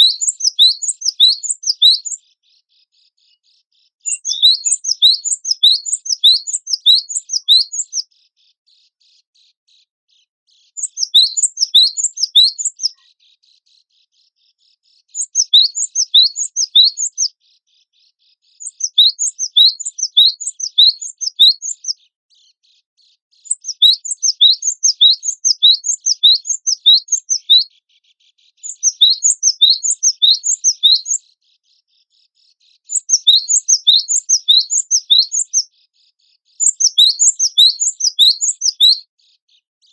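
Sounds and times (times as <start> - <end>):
bird singing rapid high notes: 0.0 - 2.2, 4.1 - 8.0, 10.8 - 13.0, 15.2 - 17.3, 18.6 - 22.0, 23.5 - 27.7, 28.6 - 31.2, 32.9 - 35.7, 36.6 - 39.0.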